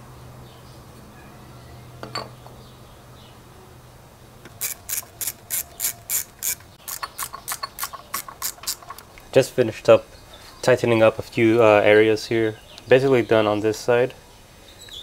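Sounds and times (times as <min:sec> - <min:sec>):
ratchet wrench clicking: 0:04.5 - 0:09.1.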